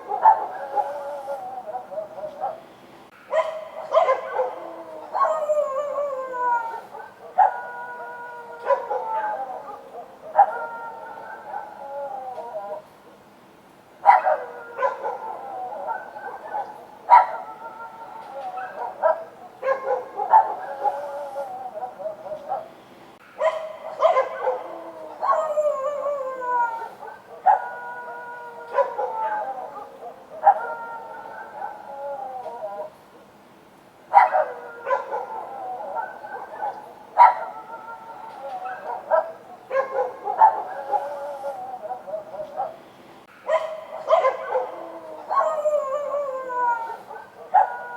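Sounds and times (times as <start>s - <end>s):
dogs howling: 0.0s - 2.7s, 3.3s - 12.9s, 14.0s - 22.8s, 23.4s - 33.0s, 34.1s - 42.8s, 43.5s - 47.9s
dogs barking: 0.0s - 12.9s, 14.0s - 33.0s, 34.1s - 47.9s.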